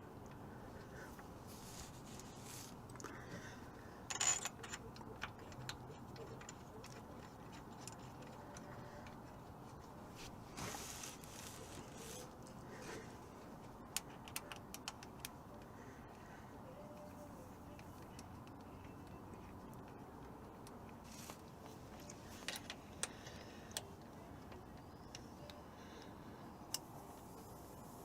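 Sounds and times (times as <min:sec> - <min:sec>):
metal parts and tools clinking: 0:04.1 - 0:08.3.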